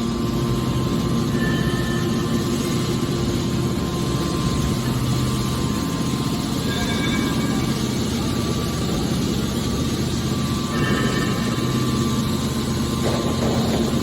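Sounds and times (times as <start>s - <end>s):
hydraulic power unit humming: 0.0s - 14.0s.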